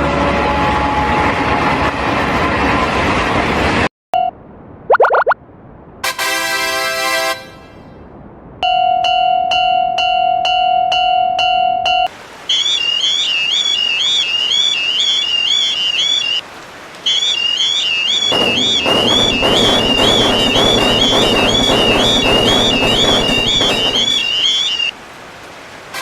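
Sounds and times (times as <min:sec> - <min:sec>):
warbling electronic alarm tone: 0:04.9 - 0:05.4, 0:12.5 - 0:16.4, 0:17.1 - 0:24.9
loud rushing noise: 0:18.2 - 0:24.9.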